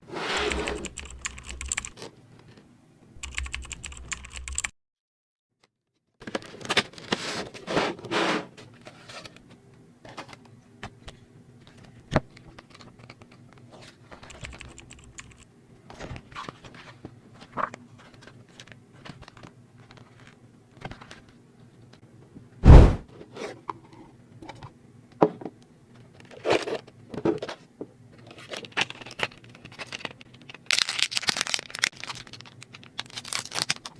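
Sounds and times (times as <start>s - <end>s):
loud thump: 22.6s - 23.0s
packaging crinkling: 28.3s - 33.9s.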